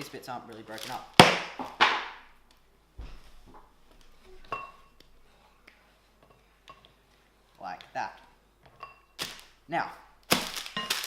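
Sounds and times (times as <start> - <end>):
chocolate snapping: 10.2 - 11.0.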